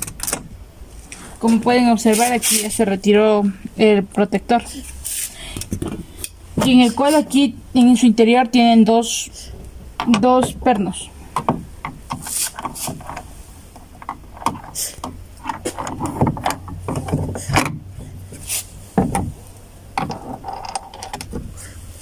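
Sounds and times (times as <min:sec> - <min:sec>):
tools knocking on metal and plastic: 0:10.0 - 0:13.2, 0:13.9 - 0:17.9, 0:19.0 - 0:19.4.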